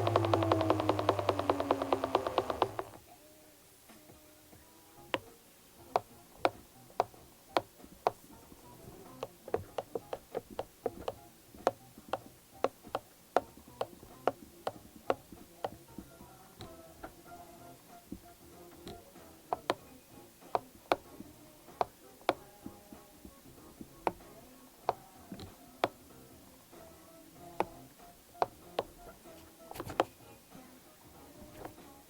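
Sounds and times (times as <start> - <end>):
electric motor whine winding down: 0.0 - 3.0
sharp motor clicks: 0.0 - 3.0.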